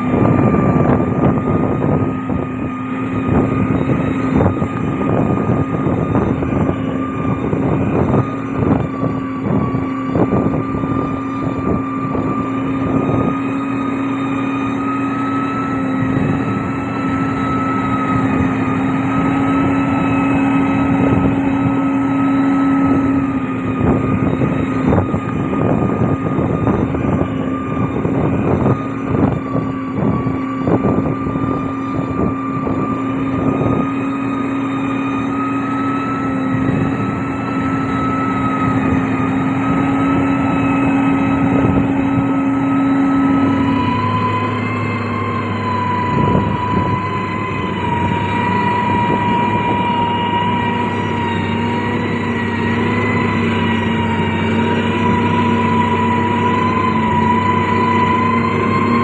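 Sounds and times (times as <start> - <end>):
diesel engine drone: 0.0 - 59.0
machine whine: 0.0 - 59.0.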